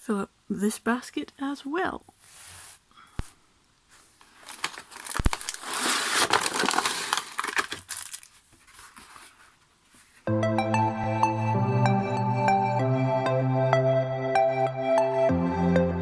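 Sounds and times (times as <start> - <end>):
plastic bags crinkling: 4.2 - 9.4
background music: 10.3 - 16.0.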